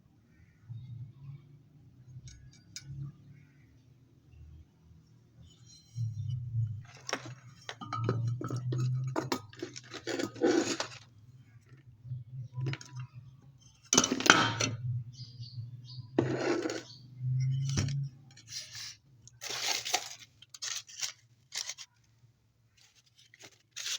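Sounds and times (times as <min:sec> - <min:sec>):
metal parts and tools clinking: 0:05.6 - 0:11.1, 0:13.6 - 0:14.8, 0:16.2 - 0:21.9.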